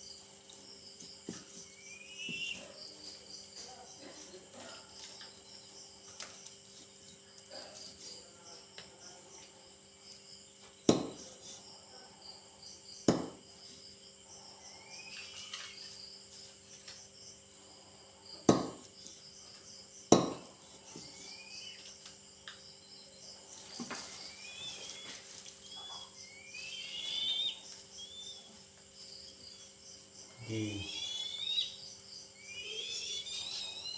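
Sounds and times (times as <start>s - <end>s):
crickets chirping: 0.0s - 33.9s
short rising chirping calls: 1.7s - 2.7s, 24.1s - 33.9s
sharp knocks: 10.9s - 11.2s, 13.1s - 13.4s, 18.5s - 18.9s, 20.1s - 20.5s.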